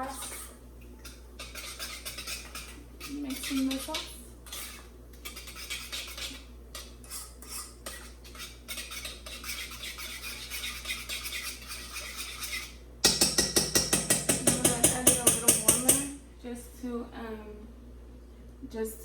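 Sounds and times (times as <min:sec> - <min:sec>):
utensil clinking and scraping dish: 0:00.1 - 0:16.1.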